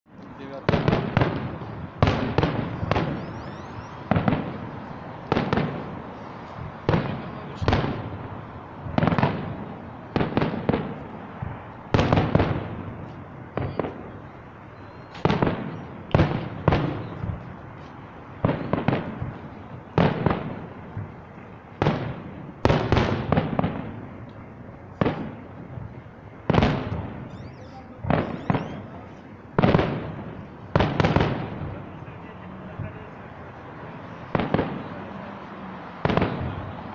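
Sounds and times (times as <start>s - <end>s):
firework shells bursting: 8.8s - 17.5s.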